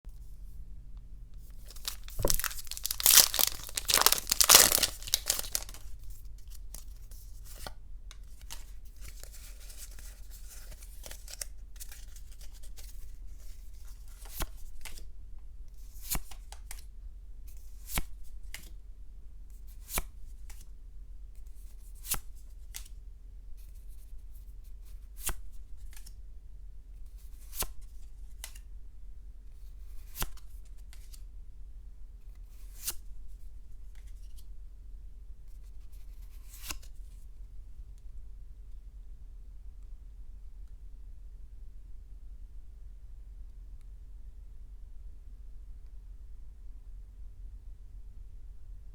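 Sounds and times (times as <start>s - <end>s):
wrapper crinkling: 1.5s - 6.0s
card snaps: 1.6s - 5.9s
foil pack tearing: 1.6s - 5.9s
low steady hum: 37.0s - 48.9s.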